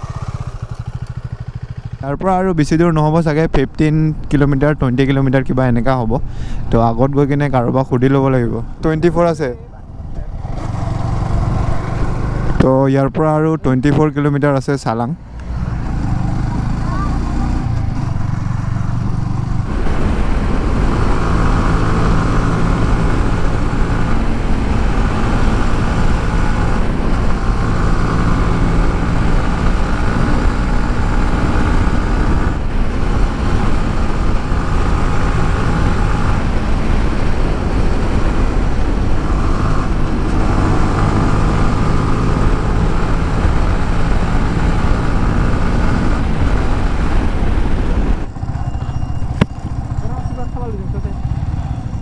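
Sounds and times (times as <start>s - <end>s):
motorcycle engine running: 0.0s - 3.2s, 9.7s - 12.8s, 15.2s - 52.0s
wind noise: 17.6s - 52.0s.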